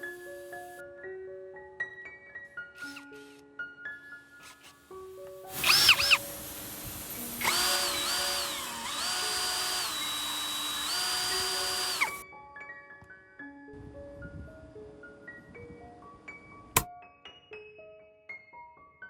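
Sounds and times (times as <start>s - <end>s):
electric power tool motor whine: 5.4s - 12.2s
background music with mallet notes: 12.2s - 19.0s.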